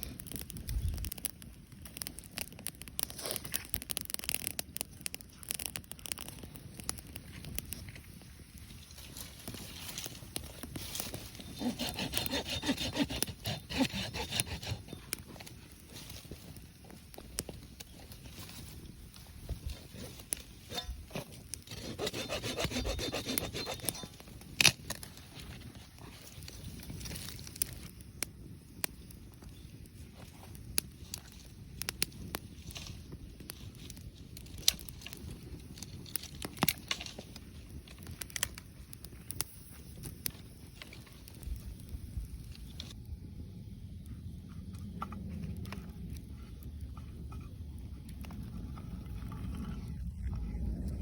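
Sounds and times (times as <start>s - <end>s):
campfire crackling and popping: 0.0s - 51.0s
rasping on wood: 11.5s - 15.0s, 21.7s - 24.1s.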